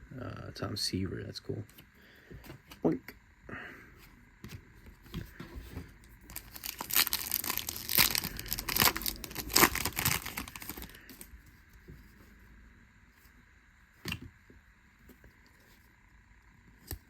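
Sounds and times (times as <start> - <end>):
wrapper crinkling and tearing: 6.3 - 11.3.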